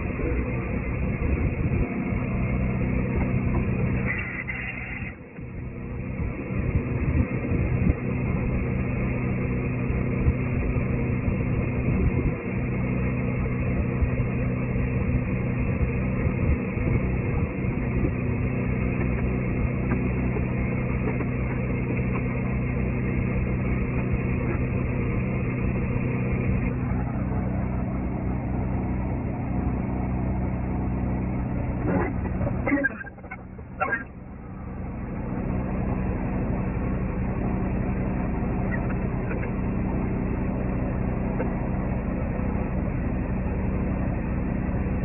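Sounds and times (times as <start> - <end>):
machine humming: 0.0 - 45.0.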